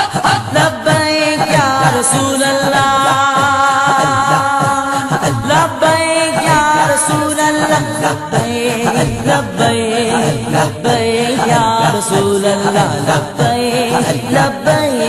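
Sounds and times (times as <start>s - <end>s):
person singing devotional song: 0.0s - 15.0s.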